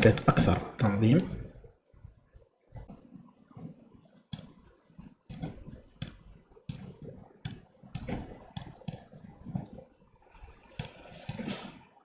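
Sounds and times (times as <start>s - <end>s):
computer mouse clicking: 4.3s - 4.7s, 5.3s - 9.2s, 10.8s - 11.6s.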